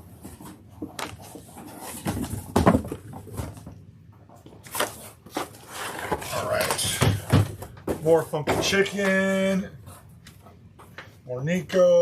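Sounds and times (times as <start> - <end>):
cardboard record sleeves rustling: 0.0 - 3.6, 4.4 - 6.9.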